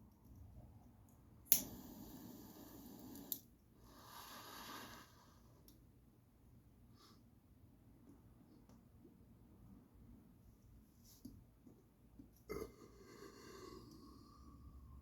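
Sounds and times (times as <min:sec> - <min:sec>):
lighter clicking: 0:01.5 - 0:02.1, 0:03.0 - 0:03.4
lighter flame hissing: 0:01.5 - 0:05.3.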